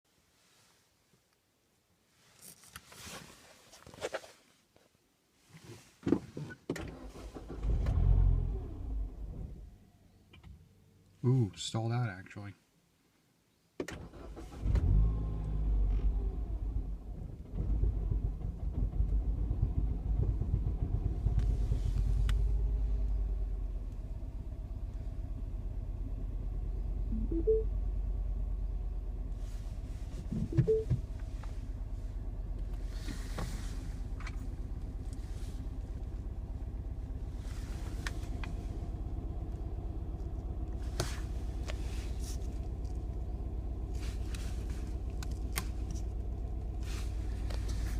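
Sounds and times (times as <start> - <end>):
car engine idling unevenly: 18.4 - 47.9.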